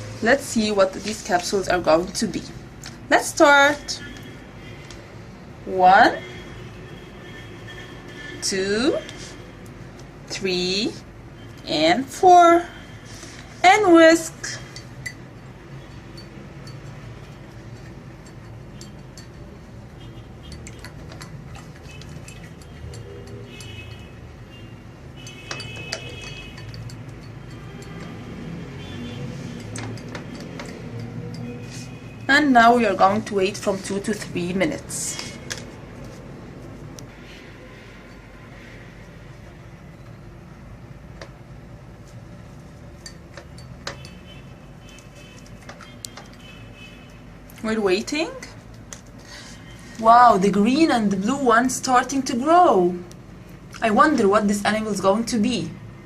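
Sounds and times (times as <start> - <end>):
glass cups clinking: 14.5 - 24.3, 25.2 - 32.1, 42.9 - 46.9.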